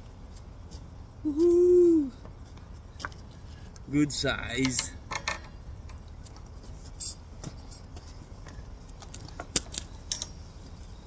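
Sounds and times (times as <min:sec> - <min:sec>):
light clicks and clinks: 0:04.6 - 0:10.7.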